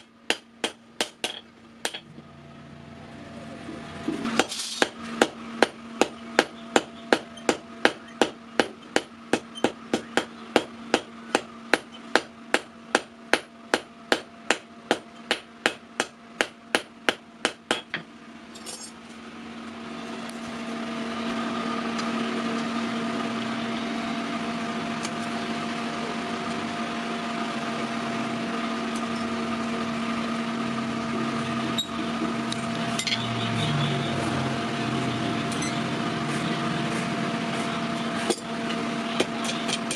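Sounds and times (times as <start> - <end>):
hammer striking steel on anvil: 0.0 - 2.0
machine whirring with hum: 0.0 - 39.9.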